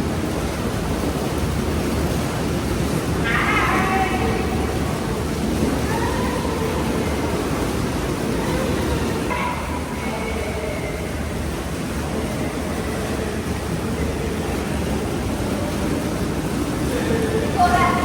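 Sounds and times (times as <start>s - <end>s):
hot tub jets churning water: 0.0s - 18.0s
faint voices: 3.1s - 18.0s.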